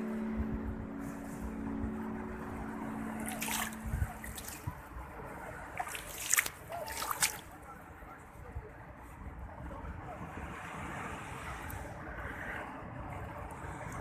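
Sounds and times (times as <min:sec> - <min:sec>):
seawater splashing and lapping: 0:00.0 - 0:07.9.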